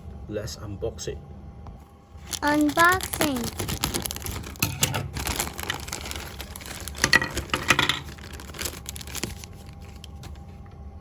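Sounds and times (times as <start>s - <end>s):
packaging crinkling and tearing: 2.2s - 10.6s.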